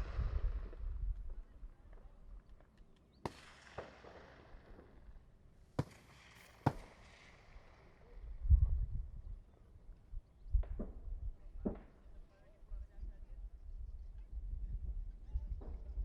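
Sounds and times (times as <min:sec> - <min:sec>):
distant gunshots echoing: 0:03.2 - 0:05.1, 0:05.7 - 0:07.9.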